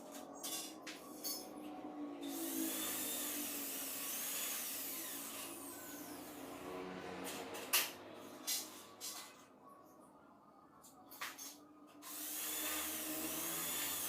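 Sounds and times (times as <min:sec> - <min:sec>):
power tool grinding steel: 0:02.2 - 0:06.7, 0:12.1 - 0:14.0.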